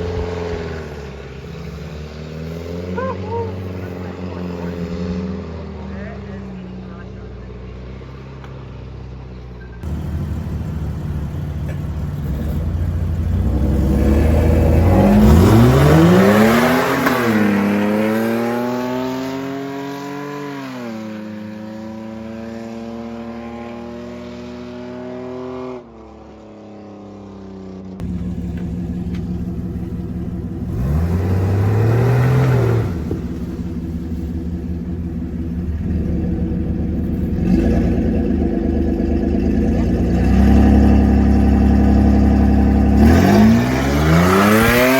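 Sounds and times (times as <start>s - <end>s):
vehicle engine revving hard: 9.8s - 25.7s, 28.0s - 44.9s.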